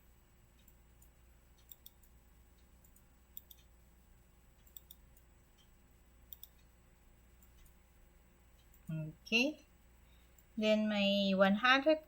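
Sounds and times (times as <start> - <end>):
low steady hum: 0.0 - 12.0
mouse buttons clicking: 0.6 - 3.7, 4.6 - 5.7, 6.3 - 6.7.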